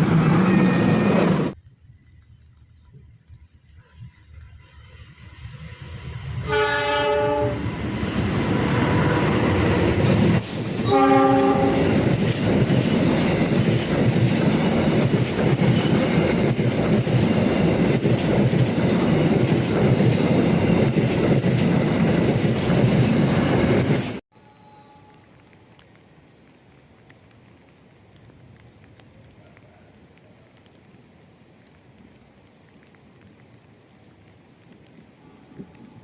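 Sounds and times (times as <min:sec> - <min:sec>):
train horn blasts: 0:06.4 - 0:07.7, 0:10.8 - 0:11.9, 0:24.3 - 0:25.4
train wheels clattering on rails: 0:09.5 - 0:24.2.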